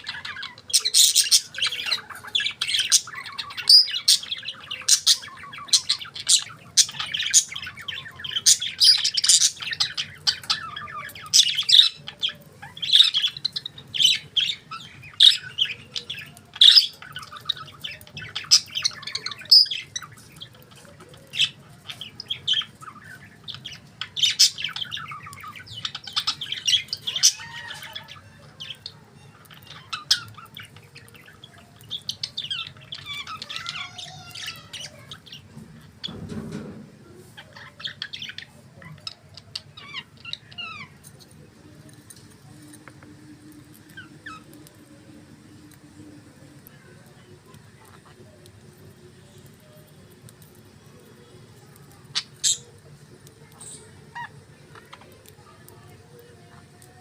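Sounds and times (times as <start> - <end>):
budgerigars chirping and squawking: 0.0 - 44.8, 47.4 - 49.0, 52.0 - 55.2.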